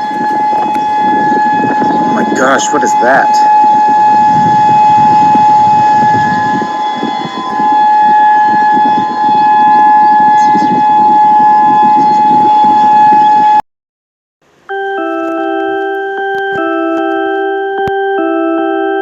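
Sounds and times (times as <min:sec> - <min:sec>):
two-tone alert alarm: 0:00.0 - 0:13.6, 0:14.7 - 0:19.0.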